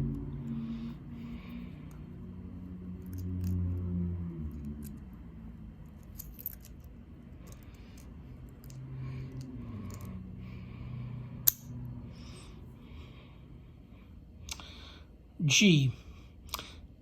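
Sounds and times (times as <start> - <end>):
sharp metallic click: 11.4 - 11.7.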